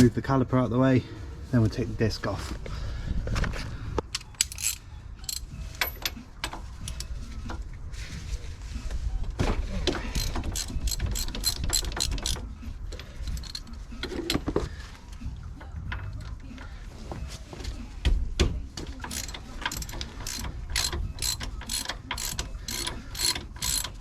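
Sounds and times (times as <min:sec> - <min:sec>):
socket ratchet clicking: 0:04.1 - 0:06.1, 0:10.2 - 0:12.4, 0:13.4 - 0:13.7, 0:19.1 - 0:24.0.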